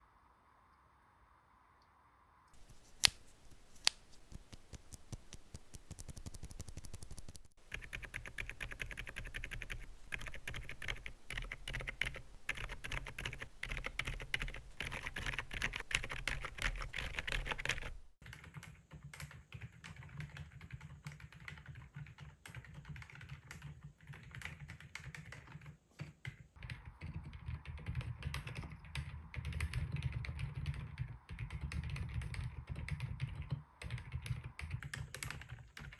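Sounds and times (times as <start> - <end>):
sharp keyboard clicks: 3.8 - 35.9
mechanical keyboard typing: 7.7 - 35.9.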